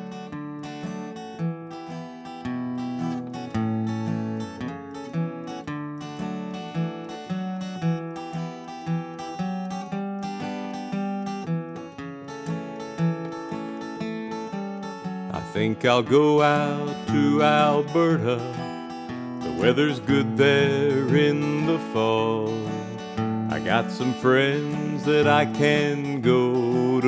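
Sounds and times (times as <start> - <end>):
acoustic guitar strumming chords: 0.0 - 27.0.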